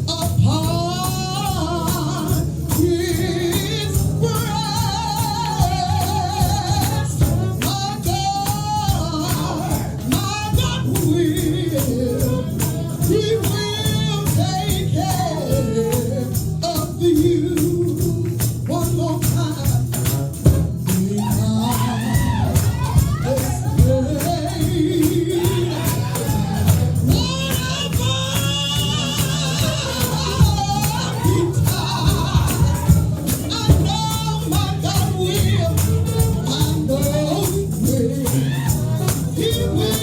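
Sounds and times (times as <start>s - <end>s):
band accompaniment: 0.0s - 40.0s
tambourine beat: 0.0s - 40.0s
singer with heavy vibrato: 20.9s - 40.0s.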